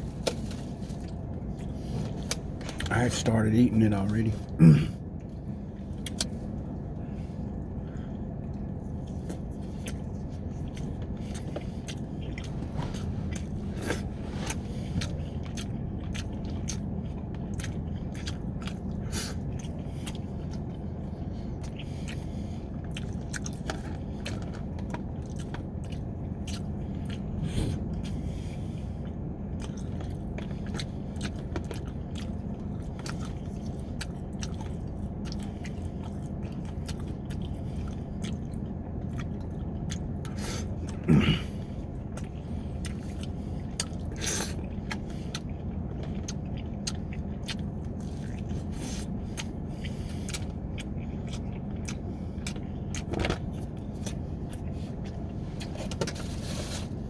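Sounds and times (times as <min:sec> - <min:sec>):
person chewing and biting: 0:00.0 - 0:02.9, 0:05.2 - 0:57.0
steady low hum: 0:00.0 - 0:57.0.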